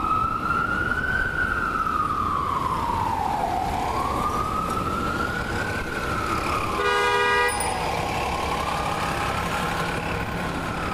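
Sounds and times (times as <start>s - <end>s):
ambulance siren wailing: 0.0s - 10.9s
short horn blast: 6.8s - 7.8s.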